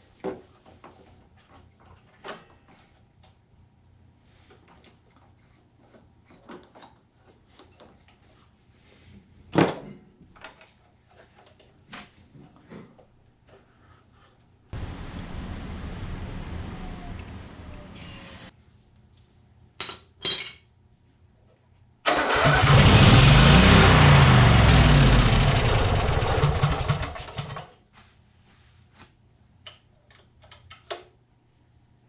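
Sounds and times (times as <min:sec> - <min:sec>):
hiss: 0:14.8 - 0:18.5
small engine running: 0:22.4 - 0:27.6.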